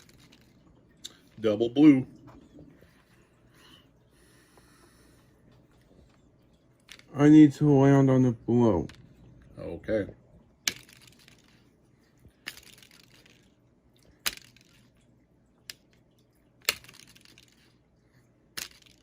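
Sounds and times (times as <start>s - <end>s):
plastic game pieces clicking: 16.6s - 17.7s.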